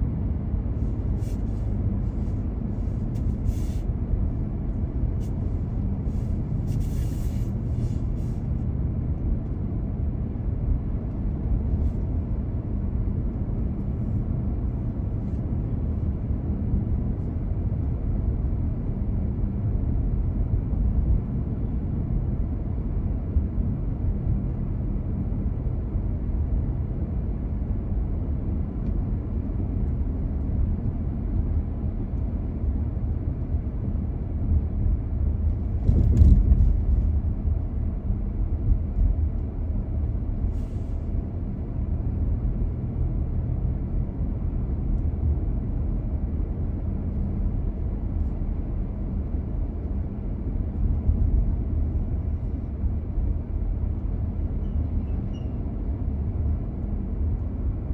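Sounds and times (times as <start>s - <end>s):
car road and engine rumble: 0.0s - 57.9s
brief hiss: 3.1s - 3.9s, 6.2s - 8.4s, 40.5s - 41.1s.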